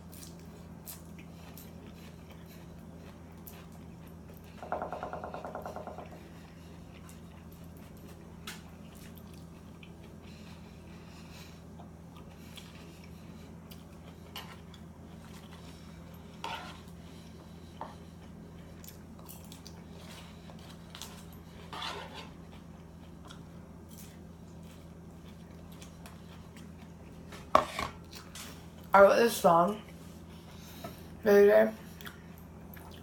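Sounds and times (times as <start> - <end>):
fork scraping salad dish: 16.3 - 16.9, 21.0 - 22.4.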